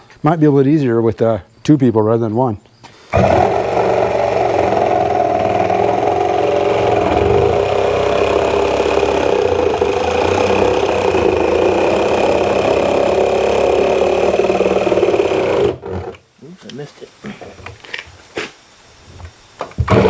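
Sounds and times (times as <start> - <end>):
power tool cutting: 3.1 - 16.2.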